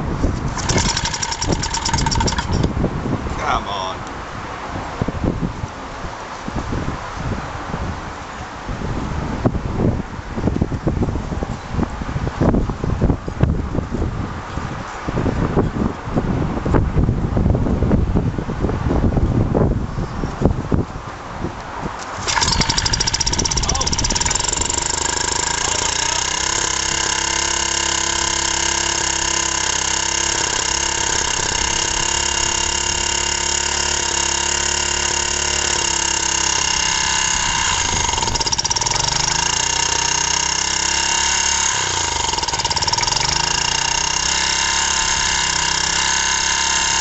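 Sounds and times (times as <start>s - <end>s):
small engine knocking heavily: 0.0s - 2.8s, 22.1s - 47.0s.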